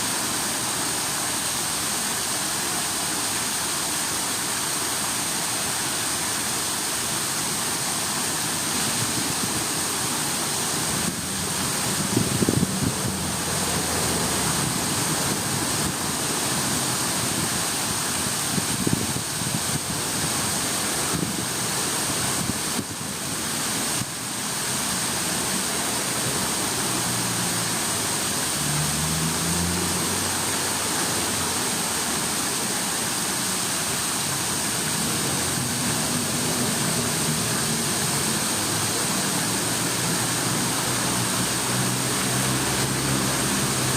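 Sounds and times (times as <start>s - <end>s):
running water rushing: 0.0s - 43.9s
passing vehicle hum: 9.8s - 17.7s, 25.7s - 33.2s, 34.3s - 43.9s.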